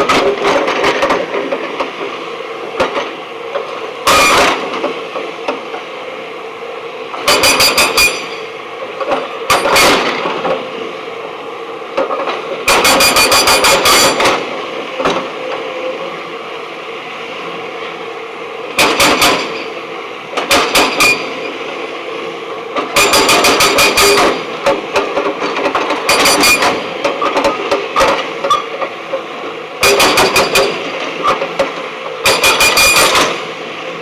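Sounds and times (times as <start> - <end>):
hydraulic rock breaker hammering stone: 7.2 - 8.5, 9.5 - 10.6, 12.7 - 15.2, 18.8 - 19.8, 20.4 - 21.4, 22.8 - 29.2, 29.8 - 33.4.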